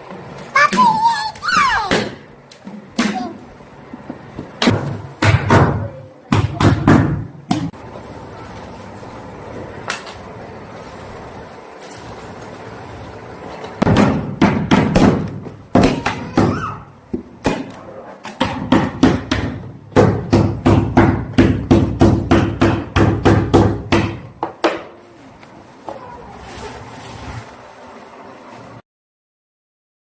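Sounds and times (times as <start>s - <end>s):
hammer striking wood: 13.8s - 24.9s.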